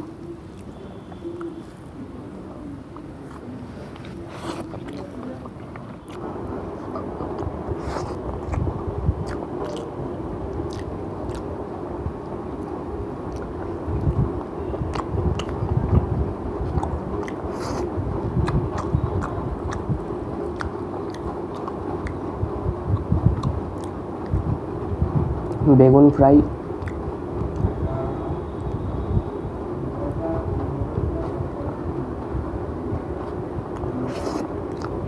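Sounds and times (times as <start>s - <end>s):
low background hum: 0.0s - 35.0s
close chewing and biting: 0.5s - 2.0s, 2.9s - 11.5s, 12.2s - 14.2s, 14.8s - 16.0s, 16.6s - 24.5s, 26.8s - 27.7s, 33.3s - 35.0s
wet mouth clicks: 2.9s - 6.2s, 6.8s - 9.9s, 10.5s - 11.5s, 12.6s - 14.1s, 14.9s - 15.6s, 16.7s - 22.2s, 22.9s - 24.4s, 26.8s - 27.7s, 33.7s - 35.0s.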